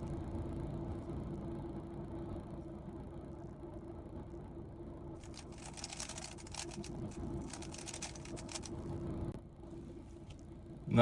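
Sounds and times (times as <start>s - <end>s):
steady low hum: 0.0s - 11.0s
puzzle cube plastic clicks: 5.2s - 8.8s.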